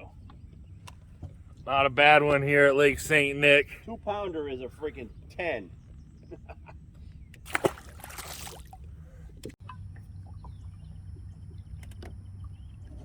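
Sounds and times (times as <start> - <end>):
low steady rumble: 0.0 - 13.0
water splashing and sloshing: 7.4 - 13.0.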